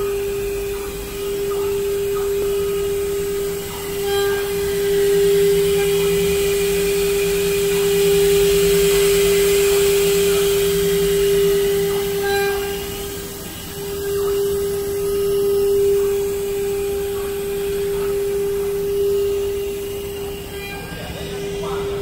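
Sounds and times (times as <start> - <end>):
router spindle whine: 0.0 - 22.0.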